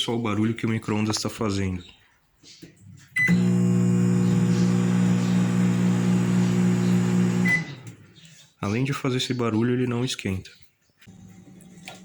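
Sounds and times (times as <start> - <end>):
microwave oven loud buzz: 3.2 - 7.9.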